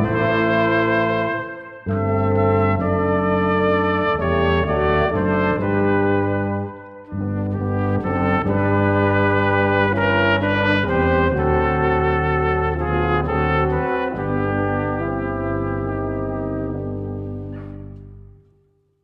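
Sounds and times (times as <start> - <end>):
brass ensemble playing a hymn: 0.0 - 18.3.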